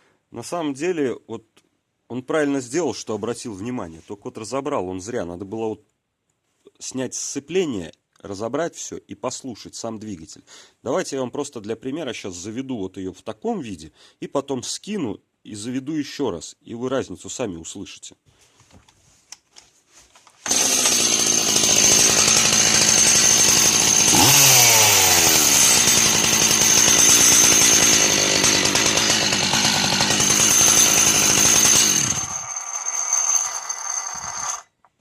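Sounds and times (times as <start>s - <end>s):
chainsaw engine idling and revving: 20.4s - 34.6s.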